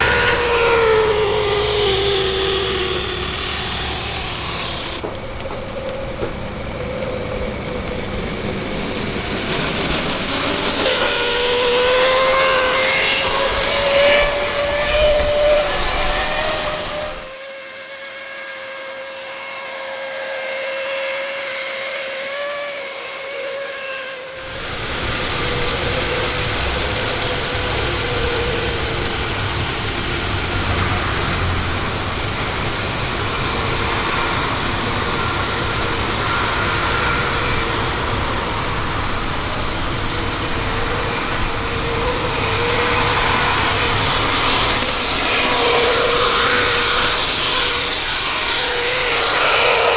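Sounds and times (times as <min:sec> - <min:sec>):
model train motor whine: 0:00.0 - 0:49.9
rushing noise with low rumble: 0:24.4 - 0:49.9.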